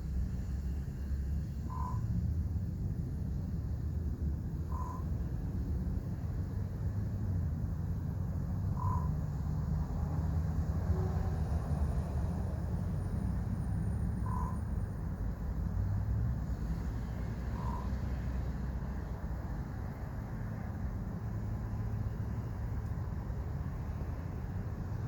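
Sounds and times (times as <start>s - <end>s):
steady low rumble: 0.0s - 25.0s
raven croaking: 14.2s - 14.6s, 17.6s - 18.0s.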